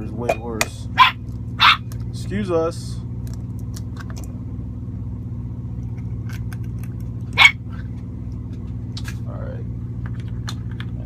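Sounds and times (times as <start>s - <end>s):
truck engine idling: 0.0s - 11.0s
dog barking: 1.0s - 1.8s, 7.4s - 7.6s.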